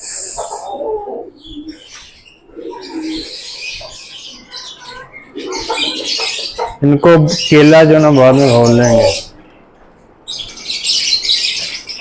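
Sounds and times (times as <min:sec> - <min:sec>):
pigeons cooing: 0:00.0 - 0:09.4
birds chirping: 0:00.0 - 0:12.0.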